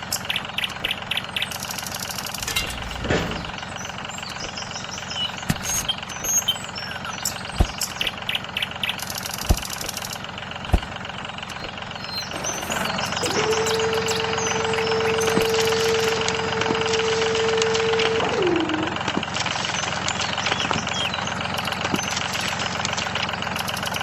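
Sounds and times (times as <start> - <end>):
motor running steadily: 0.0 - 24.0
steady whine: 1.8 - 8.3, 9.0 - 21.2.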